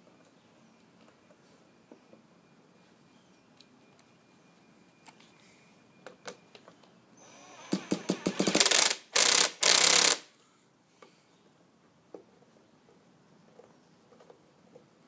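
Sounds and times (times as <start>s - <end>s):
electric starter spinning engine: 7.4s - 10.2s.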